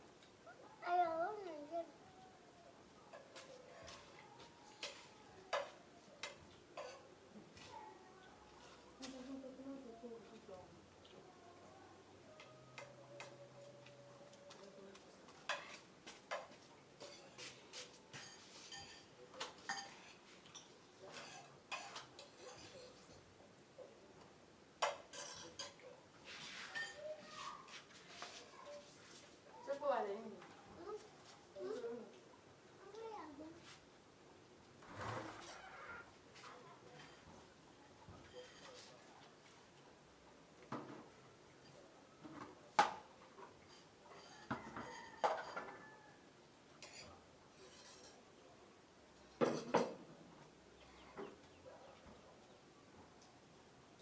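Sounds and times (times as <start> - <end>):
spoon clinking on a plate: 4.8 - 7.1, 18.2 - 23.1, 24.8 - 25.8
spoon scraping a plate: 46.8 - 48.2.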